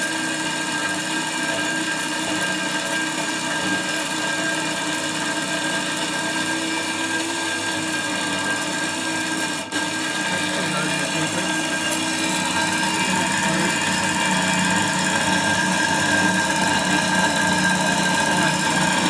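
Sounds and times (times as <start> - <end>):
bandsaw cutting steel plate: 0.0 - 19.0.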